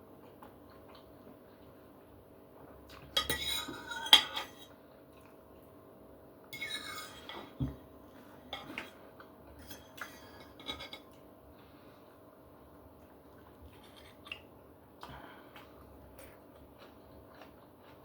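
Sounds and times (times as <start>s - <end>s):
knife and fork scraping plate: 3.2s - 4.7s, 6.6s - 7.7s, 9.6s - 11.0s.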